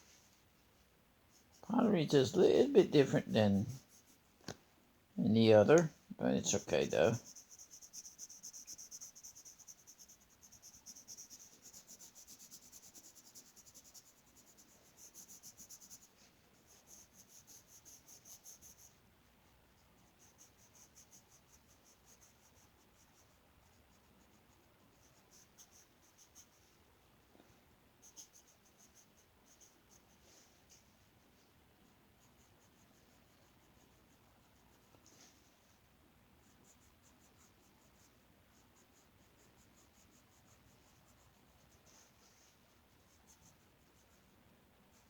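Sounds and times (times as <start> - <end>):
colouring strokes on paper: 0.0 - 4.4, 5.3 - 45.0.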